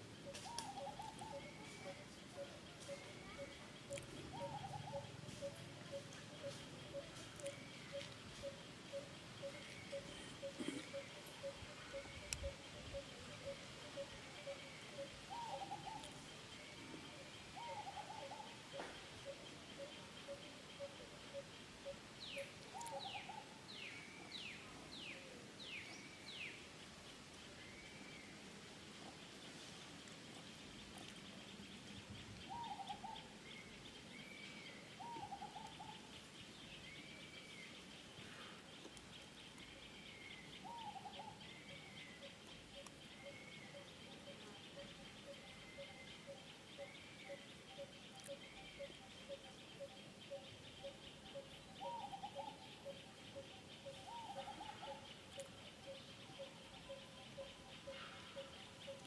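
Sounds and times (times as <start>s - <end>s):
birds calling: 32.4s - 36.2s, 37.5s - 59.0s.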